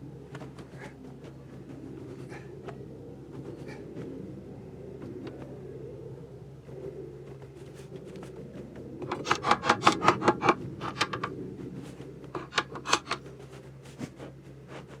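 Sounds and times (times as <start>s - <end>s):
steady low hum: 0.0s - 15.0s
quick scraping strokes: 9.0s - 11.3s, 12.4s - 13.2s.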